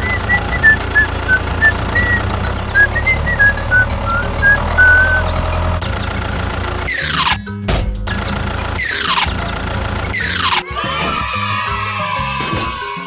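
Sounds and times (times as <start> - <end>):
high notes playing a tune: 0.0 - 7.6
tractor engine rumble: 0.0 - 11.7.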